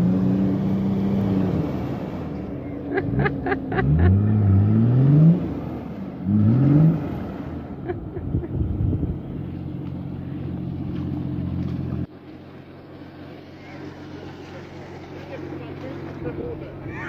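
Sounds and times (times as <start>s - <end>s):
engine revving: 0.0s - 12.1s.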